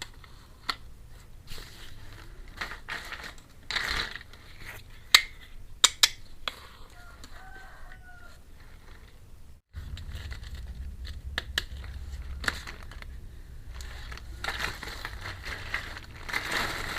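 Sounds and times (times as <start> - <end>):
packaging rustle: 13.7 - 16.9.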